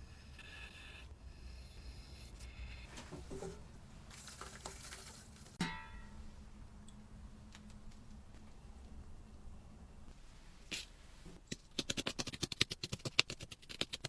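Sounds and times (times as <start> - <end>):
light scraping and rubbing: 1.8 - 5.6.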